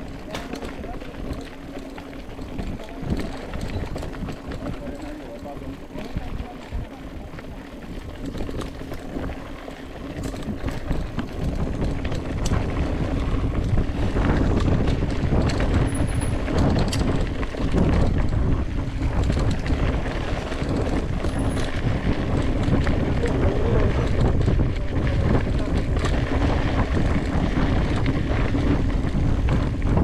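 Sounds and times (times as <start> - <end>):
bike clicks and knocks: 0.0 - 30.0
wind buffeting microphone: 0.0 - 30.0.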